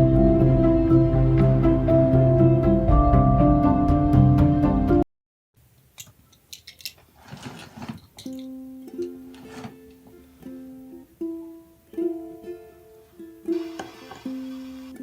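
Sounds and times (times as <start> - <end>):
plucked string instrument melody: 0.0 - 5.0, 8.2 - 15.0.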